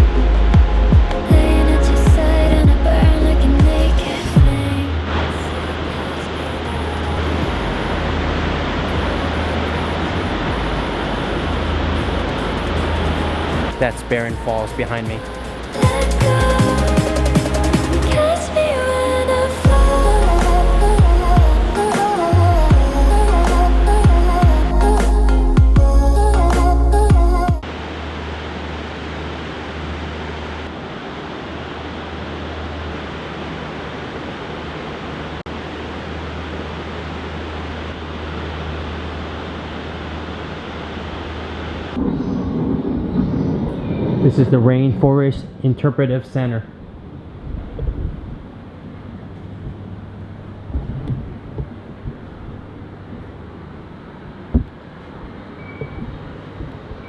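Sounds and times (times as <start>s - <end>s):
background music: 0.0s - 4.9s, 10.3s - 27.6s
waterfall roaring: 0.0s - 24.0s, 27.6s - 42.3s
low steady hum: 0.0s - 57.0s
steady rushing noise: 0.0s - 57.0s.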